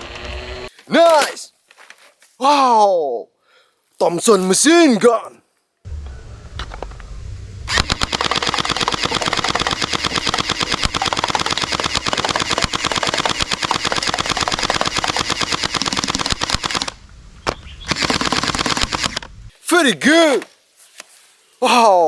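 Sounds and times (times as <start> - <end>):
toy machine gun clicking: 7.7 - 17.0, 17.9 - 19.2.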